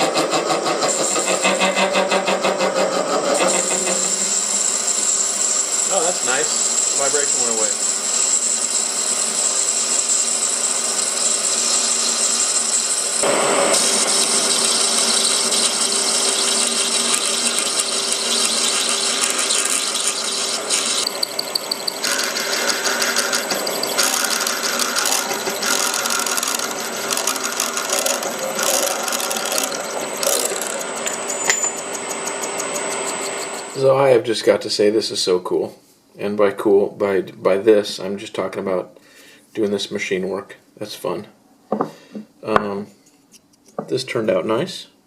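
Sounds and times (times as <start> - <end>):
metal lathe whine: 0.0 - 33.8
cutting tool hiss: 3.4 - 21.1.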